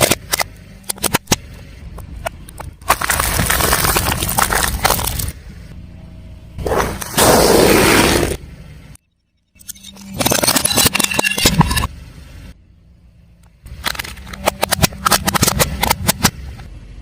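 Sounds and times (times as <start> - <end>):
objects crunching under tyre: 2.5 - 5.4.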